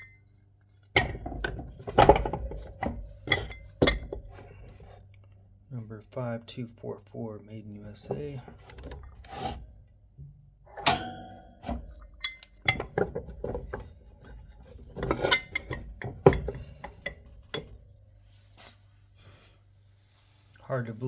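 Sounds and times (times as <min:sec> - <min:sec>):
metal tools knocking and clinking: 0:01.0 - 0:04.5, 0:10.7 - 0:11.4, 0:12.2 - 0:13.9, 0:14.9 - 0:17.8.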